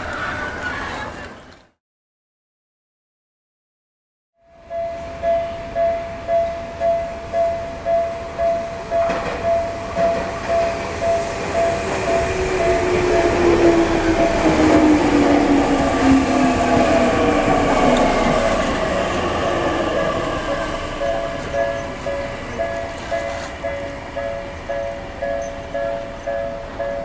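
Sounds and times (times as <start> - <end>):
train passing: 0.0 - 1.6, 4.5 - 27.0
level-crossing bell ringing: 18.2 - 27.0.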